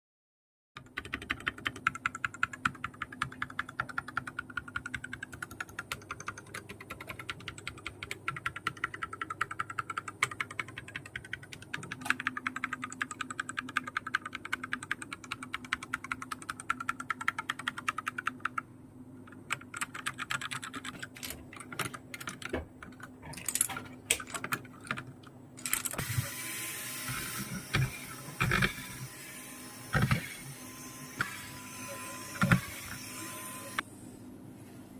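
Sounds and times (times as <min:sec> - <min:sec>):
keyboard keys clicking: 0:00.8 - 0:18.6, 0:19.3 - 0:26.0.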